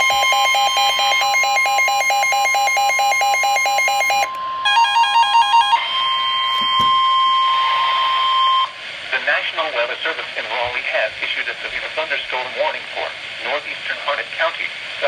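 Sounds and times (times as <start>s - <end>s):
steady high-pitched alarm tone: 0.0s - 8.8s.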